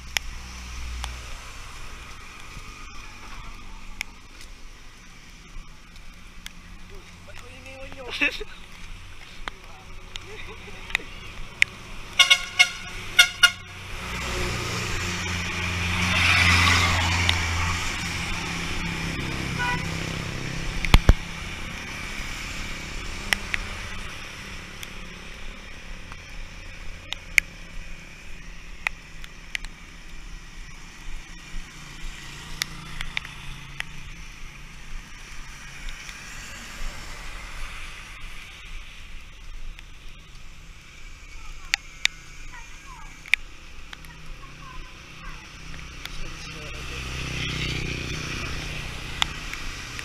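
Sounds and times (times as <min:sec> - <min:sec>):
street traffic hum: 0:00.0 - 0:50.0
vehicle engine passing: 0:09.7 - 0:27.8, 0:44.0 - 0:50.0
small clicks: 0:28.7 - 0:30.8, 0:32.1 - 0:34.2.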